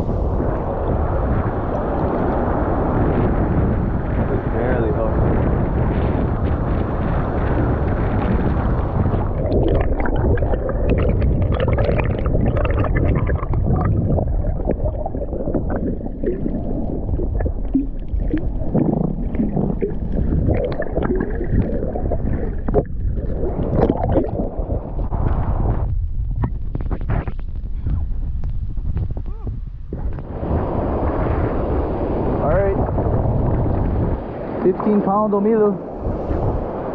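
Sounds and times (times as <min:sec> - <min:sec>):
wind buffeting microphone: 0:00.0 - 0:36.9
short crackles: 0:09.1 - 0:30.3.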